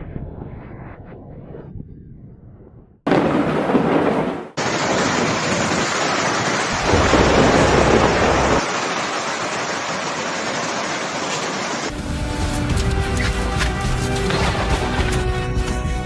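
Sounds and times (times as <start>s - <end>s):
steady rain: 4.6s - 12.6s
deep rumble of thunder: 6.7s - 8.6s.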